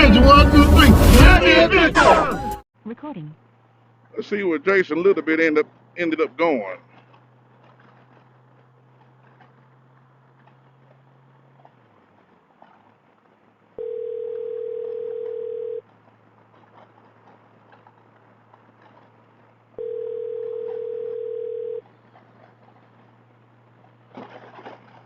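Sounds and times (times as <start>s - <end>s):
low steady hum: 13.5s - 25.0s
telephone ringback tone: 13.8s - 15.8s, 19.8s - 21.8s.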